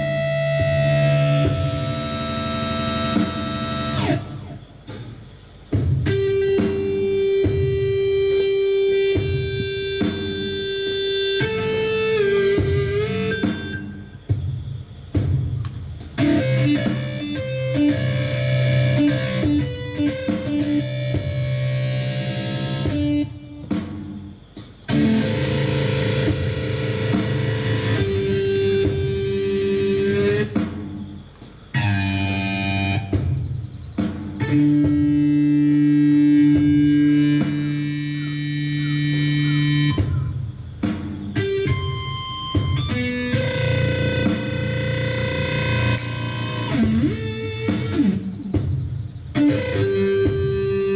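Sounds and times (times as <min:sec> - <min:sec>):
guitar chords ringing: 0:00.0 - 0:04.6, 0:06.0 - 0:14.2, 0:16.2 - 0:24.3, 0:24.9 - 0:31.1, 0:31.7 - 0:33.5, 0:34.4 - 0:40.5, 0:41.3 - 0:50.9
irregular low thuds: 0:46.7 - 0:50.8.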